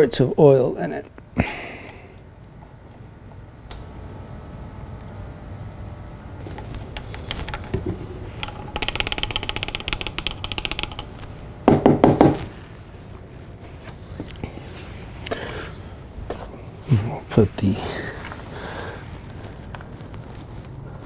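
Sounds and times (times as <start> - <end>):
plastic bottle clicking: 6.9 - 11.4
loud knocks: 11.7 - 12.5.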